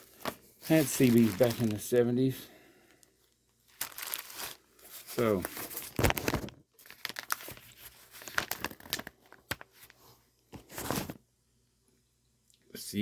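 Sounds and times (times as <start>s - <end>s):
paper rustling and crinkling: 0.0s - 2.0s, 3.7s - 11.2s.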